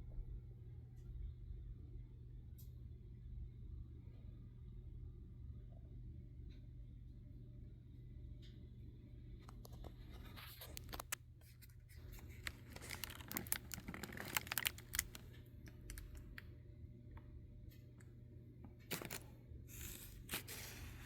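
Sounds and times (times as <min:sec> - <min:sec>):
steady low hum: 0:00.0 - 0:21.0
scratching and rustling: 0:09.6 - 0:15.2.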